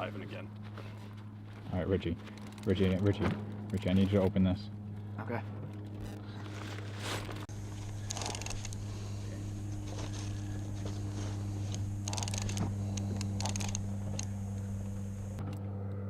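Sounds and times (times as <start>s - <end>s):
gear rustling and clicking: 1.2s - 4.4s, 5.6s - 15.6s
boat motor idling: 5.0s - 15.4s.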